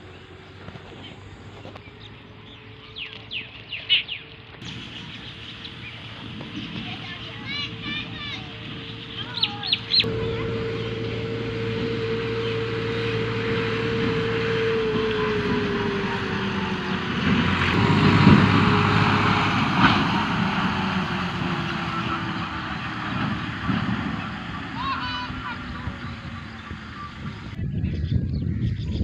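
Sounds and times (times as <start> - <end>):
motor humming: 4.6 - 27.6.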